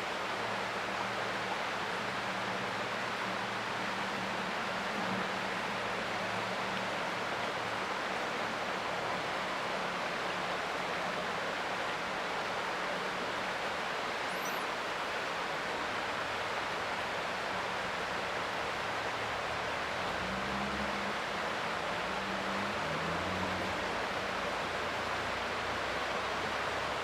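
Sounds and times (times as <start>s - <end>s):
creek water flowing: 0.0s - 27.0s
faint high chirp: 14.2s - 14.7s.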